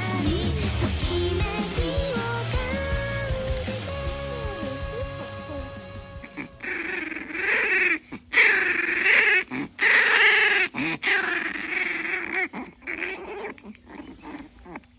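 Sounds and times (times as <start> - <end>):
dog whining: 4.1 - 14.9.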